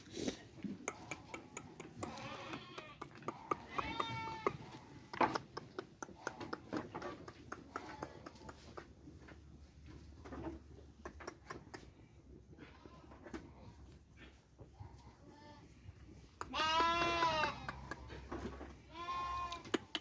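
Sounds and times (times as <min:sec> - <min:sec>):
sheep bleating: 0:02.0 - 0:04.8, 0:16.4 - 0:18.0.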